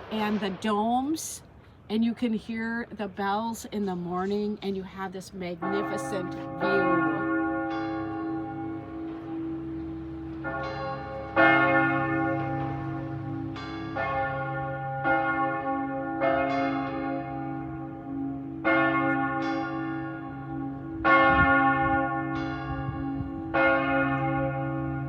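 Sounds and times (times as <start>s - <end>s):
large church bells ringing: 5.4s - 25.0s.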